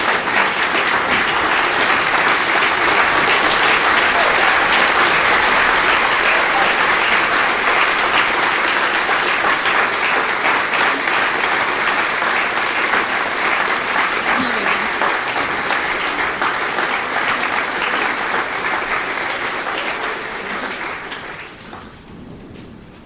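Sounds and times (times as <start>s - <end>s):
large audience applauding: 0.0s - 22.1s.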